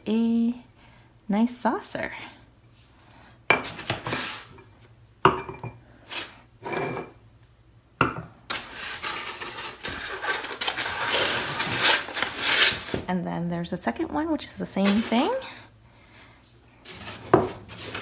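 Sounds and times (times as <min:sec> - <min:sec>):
ceramic pot clinking: 0:05.3 - 0:05.8, 0:06.6 - 0:07.1, 0:08.0 - 0:08.3
ceramic rubbing and scraping: 0:05.4 - 0:07.2, 0:08.5 - 0:13.0, 0:16.7 - 0:18.0.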